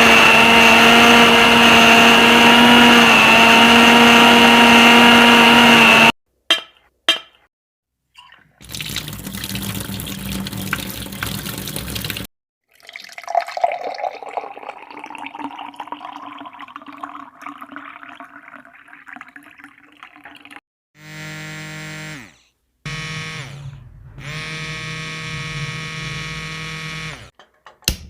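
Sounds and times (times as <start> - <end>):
tap water filling container: 8.2 - 20.6.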